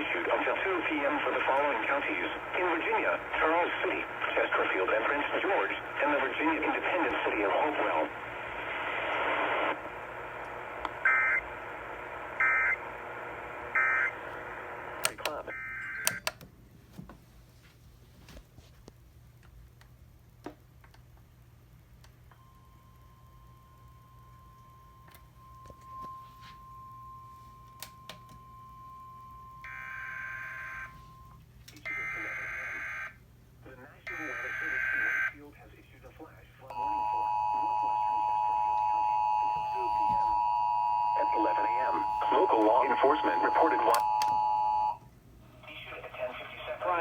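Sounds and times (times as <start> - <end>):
radio hiss: 0.0 - 11.0, 33.6 - 36.8, 41.2 - 44.2, 45.5 - 47.0
clicks: 15.0 - 15.4, 43.8 - 44.4.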